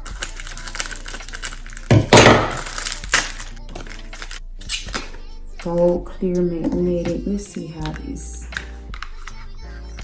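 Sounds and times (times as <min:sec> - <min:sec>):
plastic packaging being handled: 0:00.0 - 0:05.0
plastic crack and crinkle: 0:00.0 - 0:05.2
faint background music: 0:00.0 - 0:10.0.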